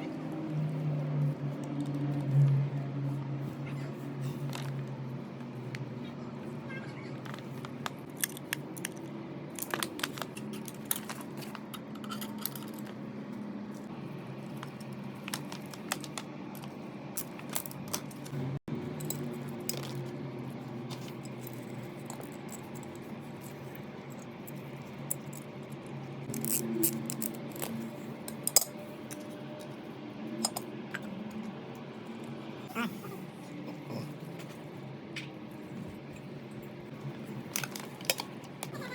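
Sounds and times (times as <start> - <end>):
metal parts and tools clinking: 7.2 - 13.0, 14.5 - 29.4, 30.4 - 31.1.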